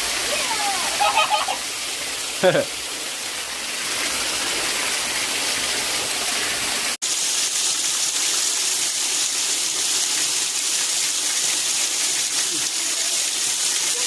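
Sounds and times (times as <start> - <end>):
waterfall rushing: 0.0 - 8.9.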